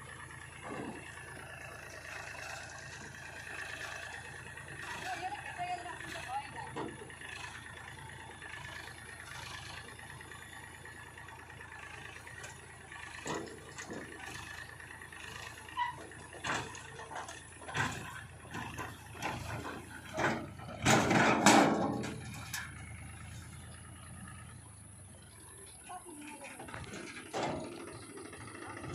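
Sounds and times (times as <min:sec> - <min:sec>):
machinery running: 0:00.0 - 0:28.9
knocks and clanks: 0:00.6 - 0:01.2, 0:02.8 - 0:08.0, 0:12.0 - 0:14.6, 0:15.2 - 0:24.4, 0:26.3 - 0:28.9.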